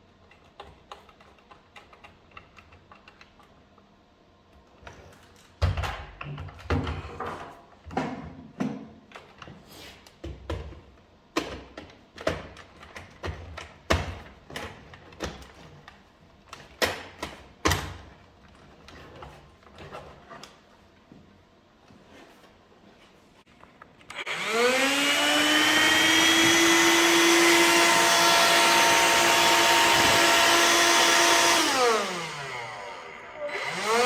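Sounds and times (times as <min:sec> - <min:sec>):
plastic parts knocking and clicking: 0:00.2 - 0:03.8, 0:10.2 - 0:20.1.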